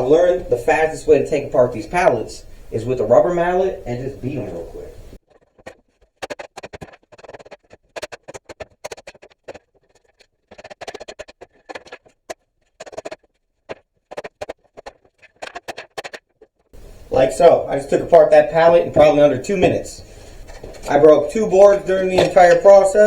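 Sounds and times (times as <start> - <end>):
rubber mallet beating wood: 5.4 - 9.6, 10.5 - 16.4.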